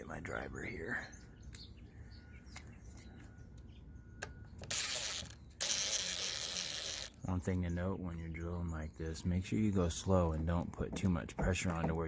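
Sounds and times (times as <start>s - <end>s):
cordless drill cutting wood: 4.6s - 7.2s.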